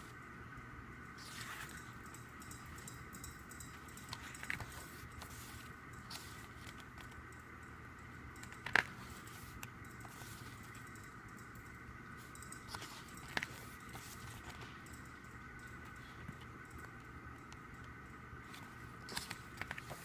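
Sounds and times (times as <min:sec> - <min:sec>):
faint background hum: 0:00.0 - 0:20.0
paper rustling: 0:01.2 - 0:01.8, 0:04.1 - 0:07.1, 0:08.6 - 0:10.7, 0:18.5 - 0:20.0.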